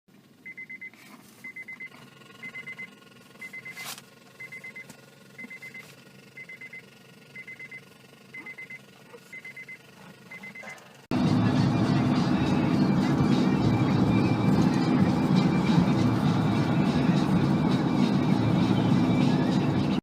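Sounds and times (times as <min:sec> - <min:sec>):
electronic alarm beeping: 0:00.4 - 0:10.8.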